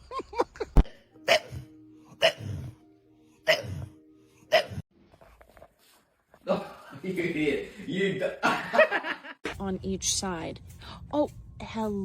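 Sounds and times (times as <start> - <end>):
dog hiccuping: 1.3 - 2.7, 3.4 - 3.9, 4.5 - 4.8.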